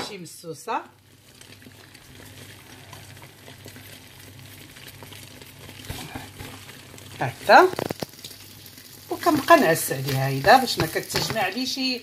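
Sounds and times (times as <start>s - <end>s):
eggs sizzling in a frying pan: 0.0s - 12.0s.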